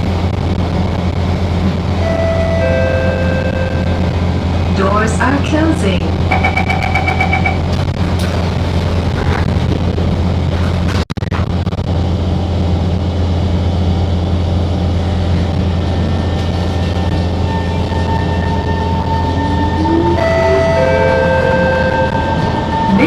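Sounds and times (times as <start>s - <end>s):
steady whine: 0.0s - 23.0s
train hum and rumble: 0.0s - 23.0s
door-closing beeps: 6.3s - 7.6s.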